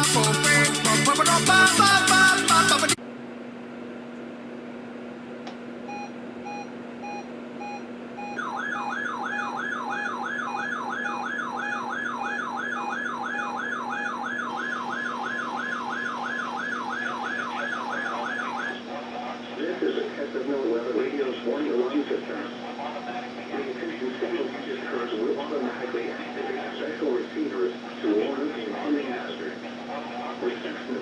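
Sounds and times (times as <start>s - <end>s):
steady low hum: 3.0s - 31.0s
warbling siren tone: 8.4s - 18.8s.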